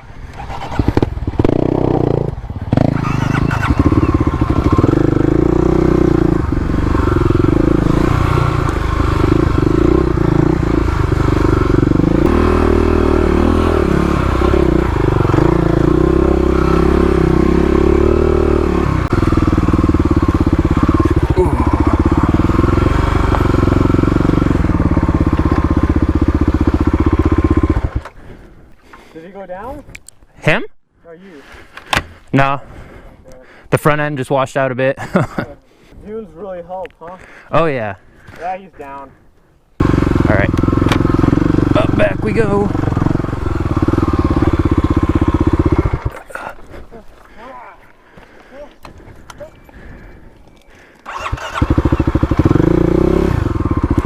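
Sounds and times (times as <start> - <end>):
dirt bike engine revving: 0.3 - 28.2, 39.8 - 46.5, 51.0 - 54.0.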